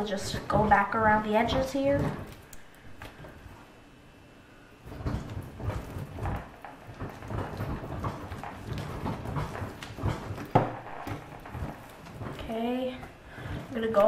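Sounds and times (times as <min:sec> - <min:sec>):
slime squishing: 0:04.8 - 0:14.0.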